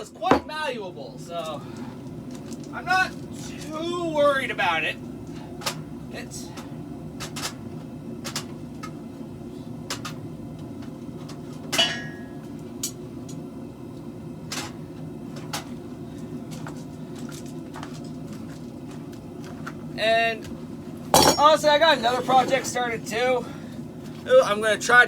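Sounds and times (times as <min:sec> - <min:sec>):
ringing metal clank: 0:11.8 - 0:12.3, 0:21.2 - 0:21.6
metal tools clinking: 0:21.2 - 0:21.6.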